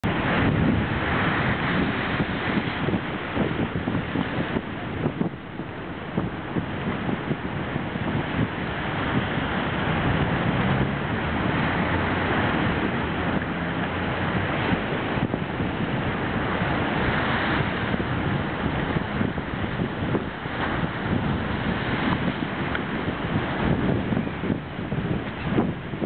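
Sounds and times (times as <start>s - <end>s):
waves breaking against a seawall: 0.0s - 26.0s
wind buffeting the microphone: 0.0s - 26.0s.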